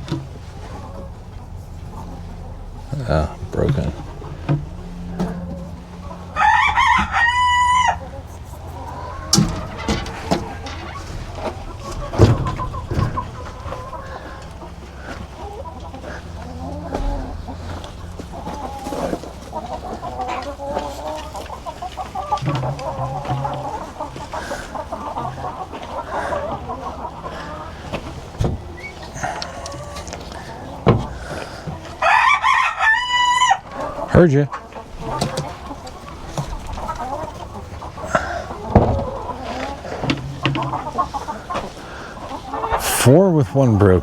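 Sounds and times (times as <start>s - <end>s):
chickens clucking: 0.0s - 44.0s
rooster crowing: 4.8s - 15.2s, 28.7s - 34.0s
sharp knocks: 9.3s - 13.8s.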